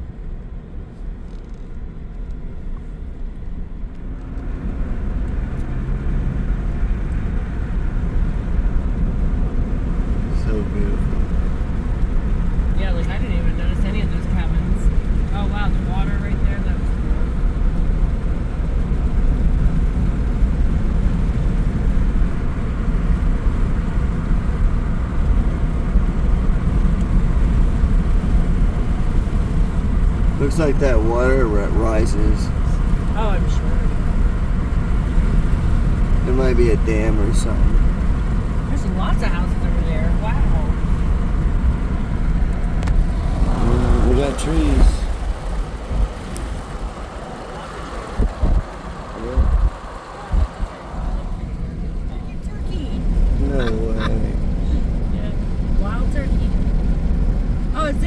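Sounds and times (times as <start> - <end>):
engine and tyre rumble: 0.0 - 58.0.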